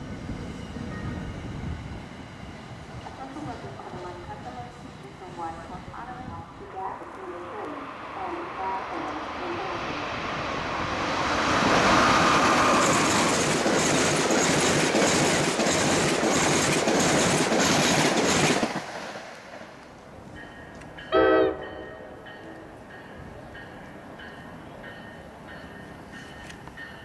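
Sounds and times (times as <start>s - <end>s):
train wheels clicking over rail joints: 11.3s - 21.1s, 22.2s - 27.0s
train horn blast: 21.1s - 22.2s.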